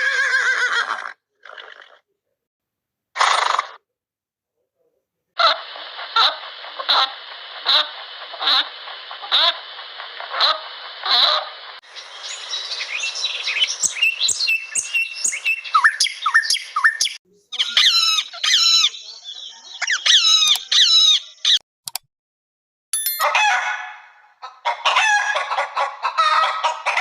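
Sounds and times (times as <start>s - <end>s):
rapidly repeated animal calls: 5.4s - 12.4s
birds chirping and whistling: 11.8s - 21.6s.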